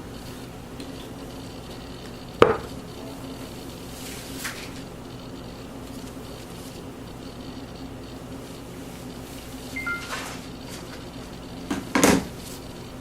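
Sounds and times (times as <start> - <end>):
steady low hum: 0.0 - 13.0
hard object knocking on work surface: 2.4 - 2.7.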